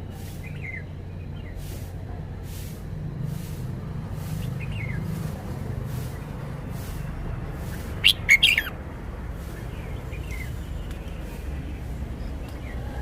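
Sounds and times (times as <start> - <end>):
faint bird chirps: 7.8 - 8.8.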